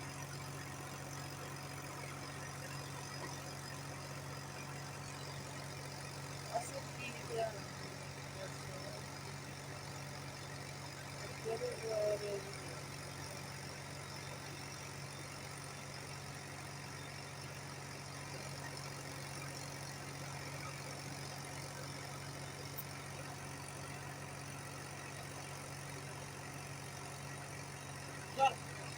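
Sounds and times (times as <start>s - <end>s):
diesel engine idling: 0.0s - 28.9s.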